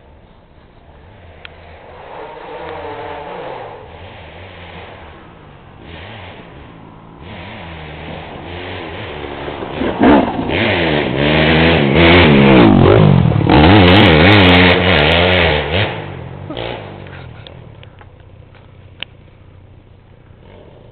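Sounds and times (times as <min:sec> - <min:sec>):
motorcycle engine revving: 0:00.8 - 0:20.9.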